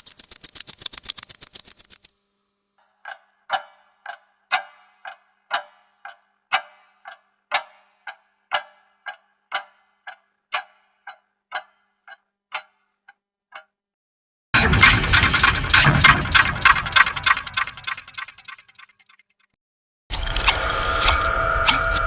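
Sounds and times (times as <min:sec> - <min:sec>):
clock ticking: 0:03.0 - 0:12.7, 0:14.6 - 0:18.9.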